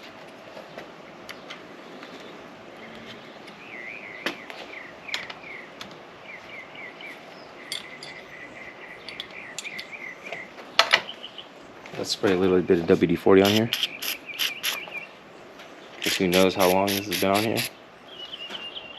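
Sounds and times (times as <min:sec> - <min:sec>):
sharp clicks: 0:13.4 - 0:14.8, 0:16.0 - 0:17.7
small bird warbling chirps: 0:13.5 - 0:15.1.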